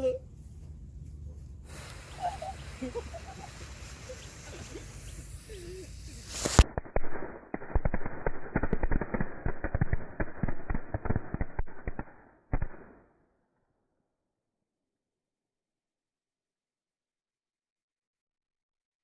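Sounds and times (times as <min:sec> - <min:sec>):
firecrackers bang and crackling pops: 0:01.6 - 0:13.2.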